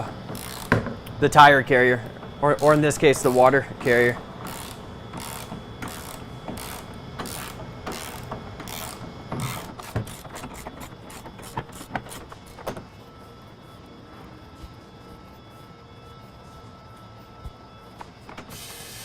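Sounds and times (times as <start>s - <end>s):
socket ratchet clicking: 4.5s - 10.2s.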